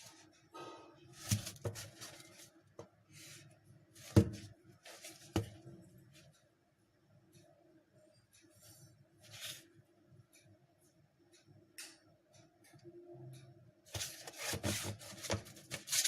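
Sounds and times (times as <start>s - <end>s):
packaging rustling and scraping: 1.2s - 2.5s, 13.9s - 16.0s.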